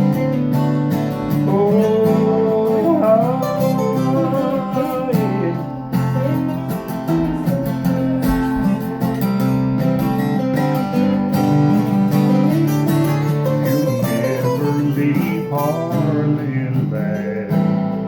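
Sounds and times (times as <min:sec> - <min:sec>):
acoustic guitar strumming chords: 0:00.0 - 0:18.0.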